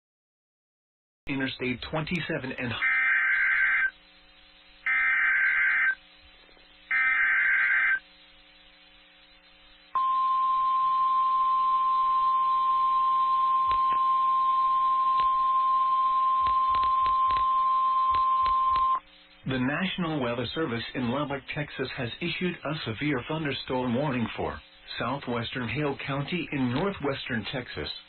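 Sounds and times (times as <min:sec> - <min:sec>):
buzzy digital data tones: 0:01.3 - 0:27.8
steady single-pitch attention tone: 0:09.9 - 0:19.0.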